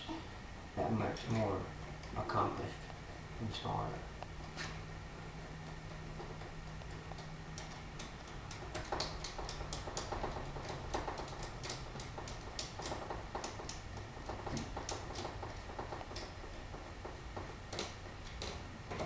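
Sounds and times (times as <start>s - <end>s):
clicks and taps on door lock: 5.6s - 19.0s.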